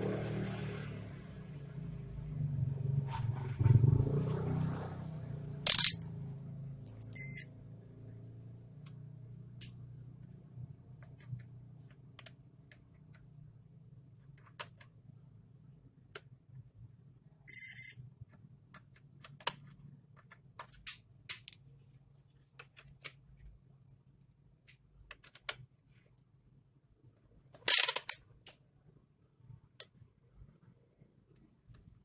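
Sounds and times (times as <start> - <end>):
brief rasping burst: 5.7 - 6.0
hand tools clicking and tapping: 5.7 - 6.0.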